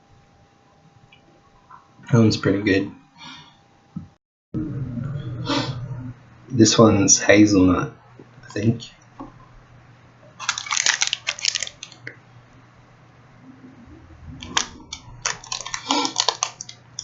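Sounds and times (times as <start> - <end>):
plastic wrapper crinkling and tearing: 10.4 - 12.2, 14.4 - 17.0.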